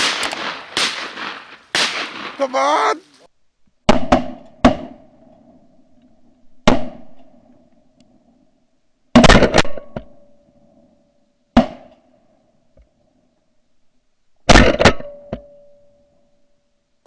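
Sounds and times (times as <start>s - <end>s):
shotguns firing: 0.0s - 3.2s.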